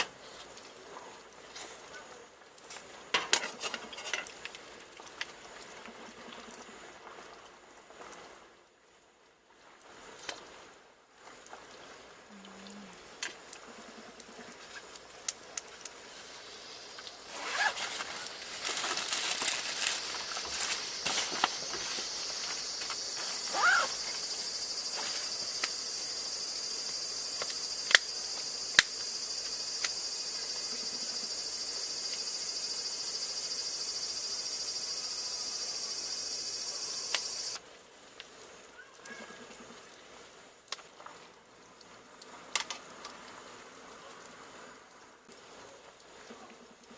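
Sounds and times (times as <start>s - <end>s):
insects droning: 14.5s - 37.6s.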